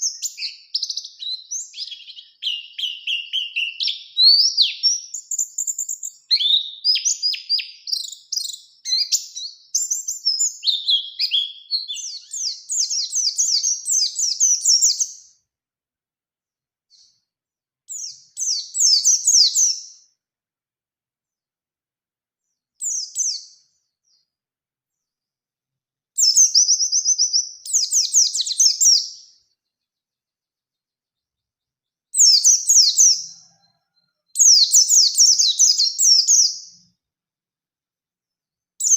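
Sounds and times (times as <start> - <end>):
bird twittering and trilling: 0.0 - 15.4, 17.9 - 20.0, 22.8 - 24.3, 26.2 - 30.1, 32.1 - 36.9.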